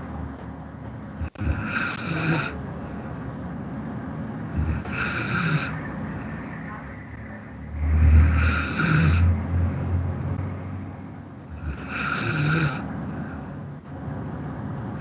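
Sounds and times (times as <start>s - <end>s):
man snoring: 1.2s - 2.6s, 4.5s - 6.5s, 7.7s - 9.9s, 11.5s - 13.4s.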